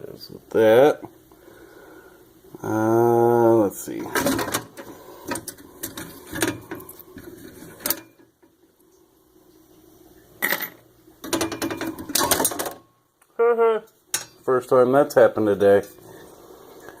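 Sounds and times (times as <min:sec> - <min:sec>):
metal parts and tools clattering: 0:04.1 - 0:08.2, 0:10.4 - 0:12.8.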